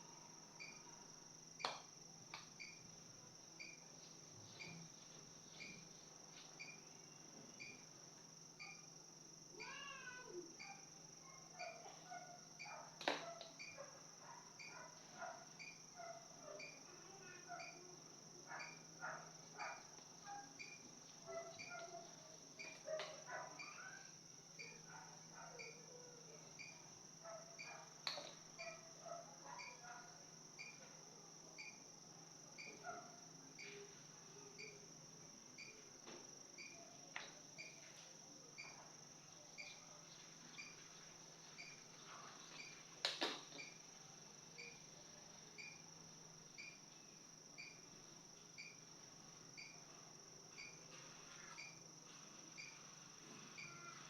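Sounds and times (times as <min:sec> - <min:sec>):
crickets trilling: 0:00.0 - 0:54.0
insect chirring: 0:00.0 - 0:54.0
short insect chirps: 0:00.2 - 0:04.0, 0:05.5 - 0:11.9, 0:14.6 - 0:17.9, 0:18.5 - 0:25.0, 0:25.6 - 0:27.0, 0:30.6 - 0:30.9, 0:33.5 - 0:35.9, 0:36.6 - 0:36.9, 0:37.6 - 0:37.9, 0:39.5 - 0:54.0.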